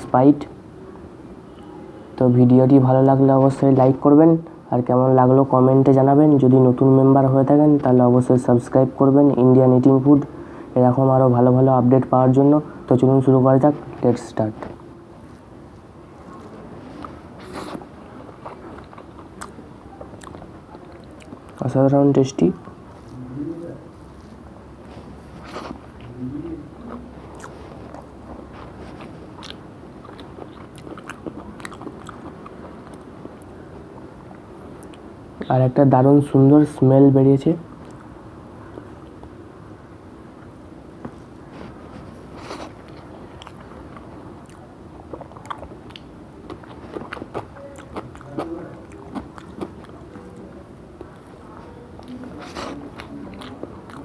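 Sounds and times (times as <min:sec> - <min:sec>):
person chewing food: 0:15.2 - 0:21.8, 0:24.2 - 0:35.1, 0:40.4 - 0:54.0.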